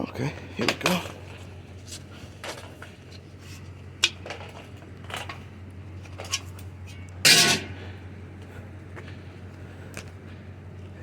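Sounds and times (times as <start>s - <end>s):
metal clatter: 6.1s - 7.8s.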